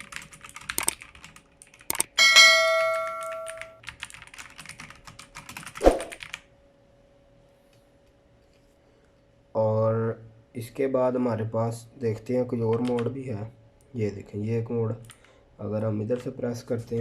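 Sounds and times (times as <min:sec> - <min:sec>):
mechanical keyboard keys clicking: 0:00.0 - 0:02.1, 0:03.0 - 0:06.4, 0:12.7 - 0:13.1
loud ringing ding: 0:02.2 - 0:03.8.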